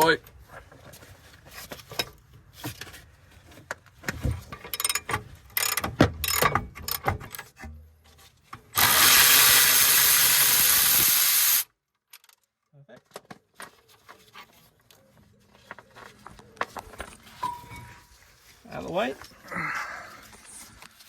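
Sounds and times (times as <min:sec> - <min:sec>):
loud steady hiss: 0:08.8 - 0:11.7
metal tools clanking: 0:17.4 - 0:18.1.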